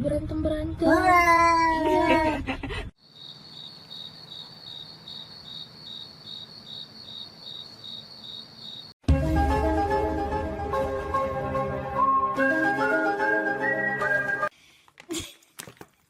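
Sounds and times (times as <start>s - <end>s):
cricket chirping: 3.0s - 9.0s.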